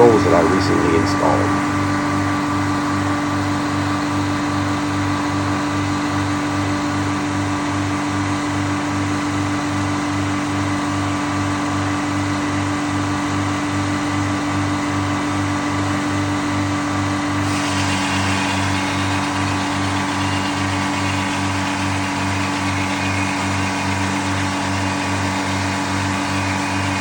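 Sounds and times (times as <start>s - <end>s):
sawmill machine drone: 0.0s - 9.1s, 17.4s - 27.0s.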